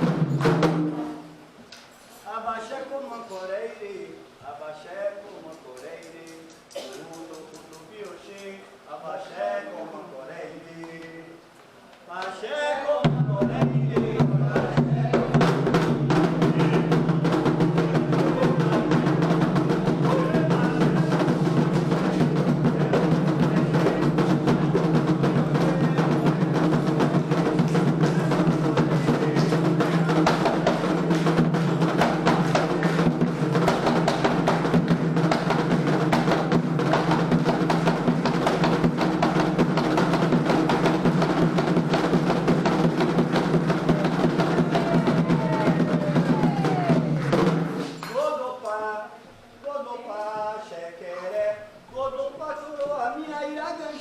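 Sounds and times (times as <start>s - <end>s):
hand drums playing fast rhythm: 0.0s - 1.0s, 13.1s - 47.9s.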